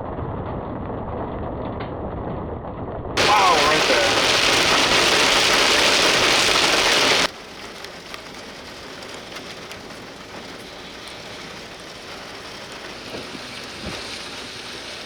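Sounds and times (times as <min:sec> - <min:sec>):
loud rushing noise: 0:03.2 - 0:07.3
light taps of raindrops: 0:03.2 - 0:15.0
rain hissing: 0:03.2 - 0:15.0.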